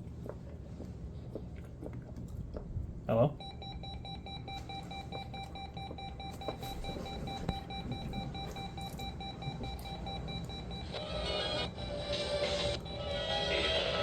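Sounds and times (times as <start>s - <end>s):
weather radio alarm beeping: 3.4s - 14.0s.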